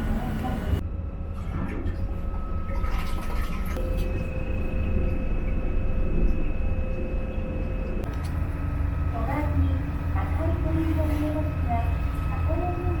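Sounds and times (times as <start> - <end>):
steady whine: 3.5 - 13.0.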